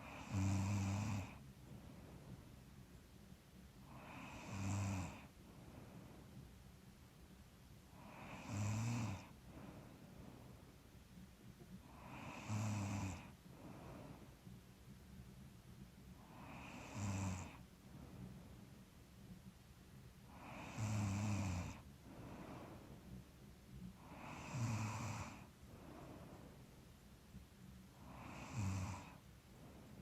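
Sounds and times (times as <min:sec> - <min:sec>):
person snoring: 0:00.0 - 0:01.4, 0:03.9 - 0:05.3, 0:08.0 - 0:09.4, 0:11.9 - 0:14.0, 0:16.2 - 0:17.6, 0:20.3 - 0:22.5, 0:24.0 - 0:25.5, 0:28.0 - 0:29.2
soft breathing: 0:00.0 - 0:30.0.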